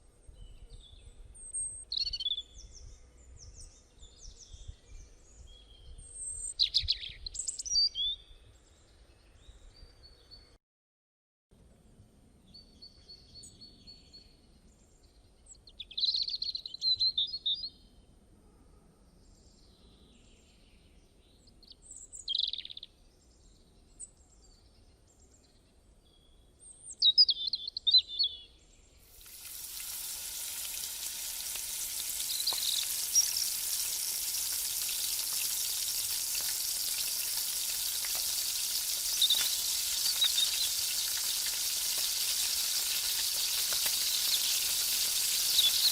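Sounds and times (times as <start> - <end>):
birds chirping: 29.1 - 45.9
chicken sizzling in hot oil: 29.1 - 45.9.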